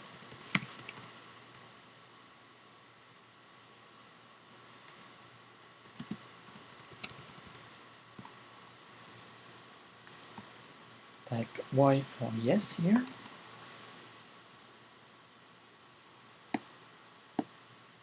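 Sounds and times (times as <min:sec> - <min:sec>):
keyboard typing clicks: 0:00.0 - 0:01.7, 0:04.5 - 0:05.1, 0:05.9 - 0:07.6, 0:13.0 - 0:13.4.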